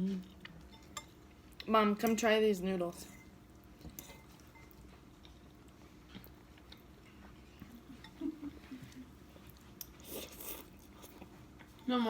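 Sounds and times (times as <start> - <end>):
chewing noodles: 9.2 - 11.9.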